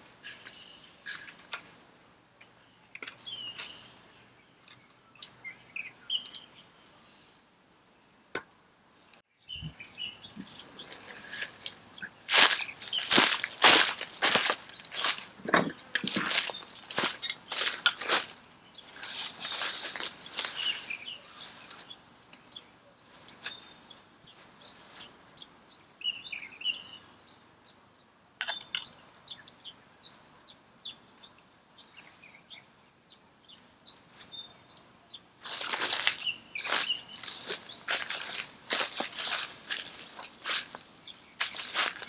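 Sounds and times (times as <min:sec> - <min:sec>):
bird chirping: 0:00.2 - 0:01.6, 0:02.2 - 0:08.4, 0:09.0 - 0:42.0
crunching and cracking handling noises: 0:10.4 - 0:22.5, 0:35.4 - 0:42.0.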